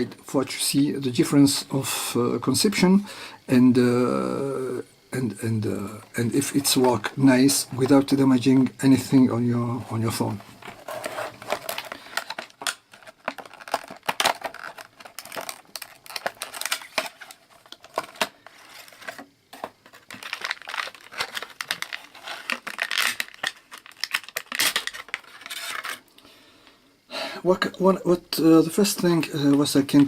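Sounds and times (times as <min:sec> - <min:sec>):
plastic packaging crinkling: 0:05.4 - 0:26.1.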